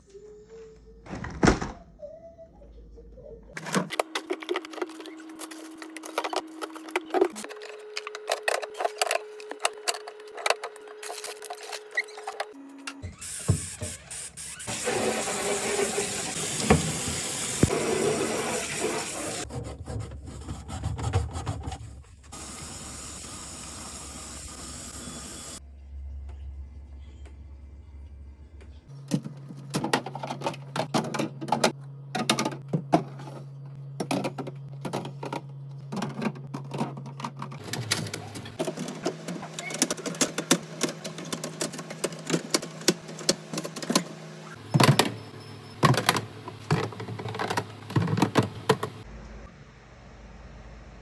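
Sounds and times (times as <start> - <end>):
containers and bottles clattering: 3.6 - 12.5, 29.1 - 45.2, 45.8 - 49.0.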